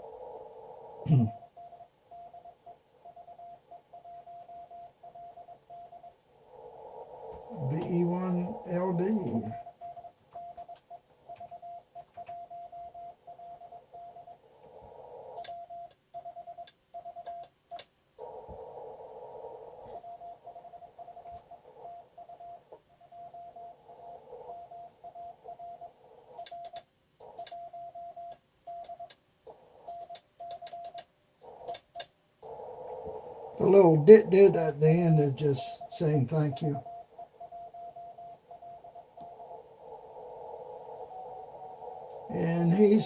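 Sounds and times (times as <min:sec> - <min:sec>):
radio band hiss: 0:06.4 - 0:09.8, 0:32.4 - 0:37.4, 0:38.4 - 0:43.0
morse code tone: 0:07.5 - 0:14.4, 0:33.6 - 0:39.2
sharp clicks: 0:15.4 - 0:17.9, 0:26.4 - 0:27.7, 0:28.3 - 0:29.2, 0:29.9 - 0:32.6, 0:42.0 - 0:42.3.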